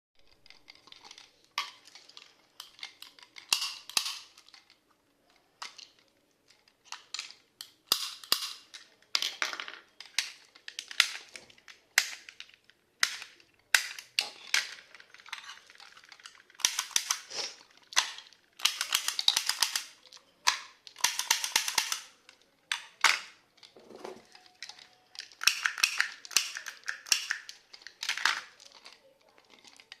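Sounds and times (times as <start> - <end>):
metal toy guns clicking: 0.3 - 4.8, 5.6 - 23.7, 24.3 - 30.0.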